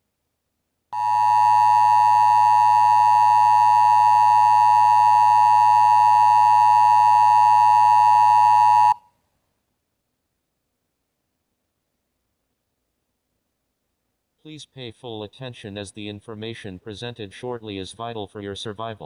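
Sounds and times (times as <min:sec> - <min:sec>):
steady electronic alert tone: 0:01.0 - 0:09.0.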